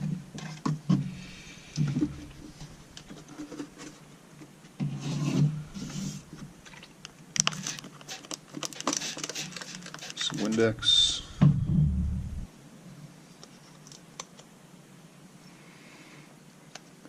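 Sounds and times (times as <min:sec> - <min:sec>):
hands rubbing plastic: 0:07.4 - 0:11.4.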